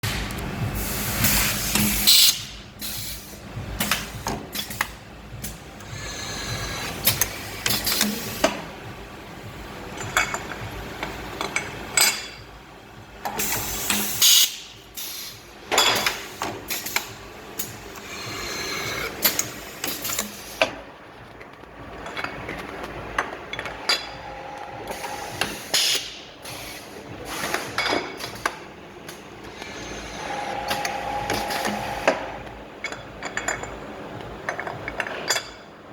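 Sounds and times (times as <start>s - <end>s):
pneumatic air hiss: 0.8s - 8.6s, 13.3s - 20.7s, 24.9s - 28.4s
faint motor whine: 29.3s - 32.7s.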